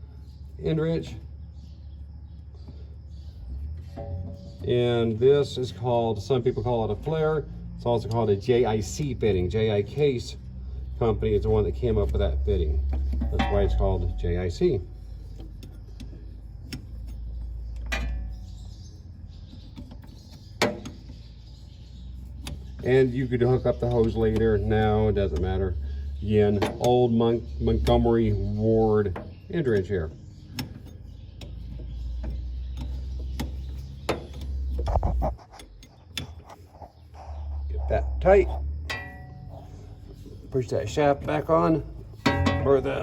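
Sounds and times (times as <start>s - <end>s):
steady low rumble: 3.2s - 19.4s, 36.6s - 43.0s.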